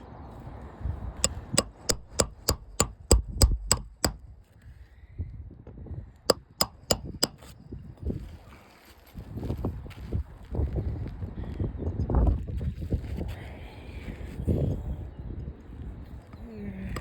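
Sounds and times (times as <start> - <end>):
hammer striking roofing nails: 1.2 - 4.2, 6.3 - 7.5.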